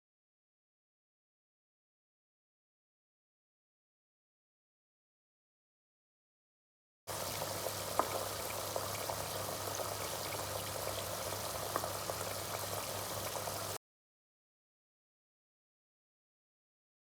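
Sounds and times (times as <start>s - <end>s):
butter sizzling in a pan: 7.1s - 13.8s
small pops and crackles: 7.9s - 8.6s.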